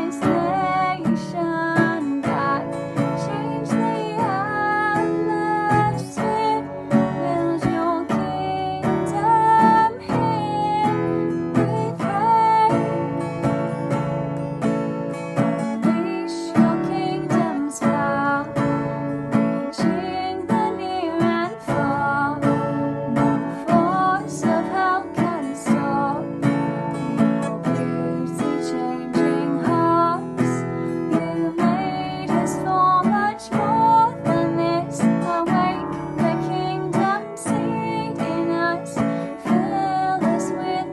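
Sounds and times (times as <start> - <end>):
acoustic guitar strumming: 0.0 - 40.9.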